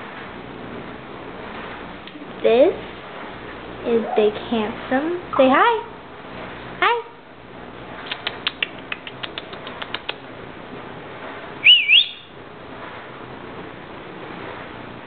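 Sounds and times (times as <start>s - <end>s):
parrot clicking: 8.1s - 10.2s
parrot wavering whistle: 11.6s - 12.3s.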